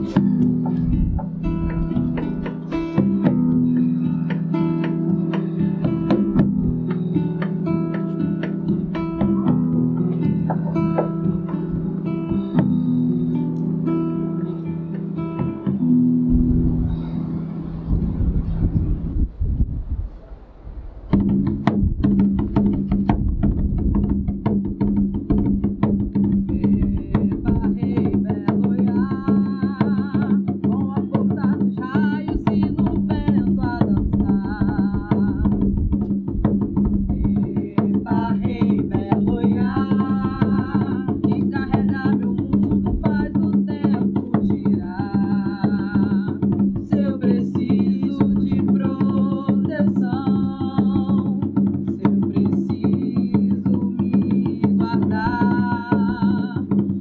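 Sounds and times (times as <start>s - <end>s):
wavering voice-like melody: 16.5s - 19.0s
fast steady drumming: 21.1s - 57.0s.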